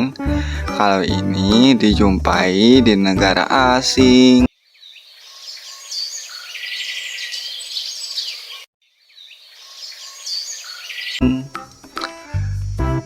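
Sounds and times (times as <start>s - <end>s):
birds chirping: 0.0s - 13.0s
insects trilling: 9.2s - 13.0s.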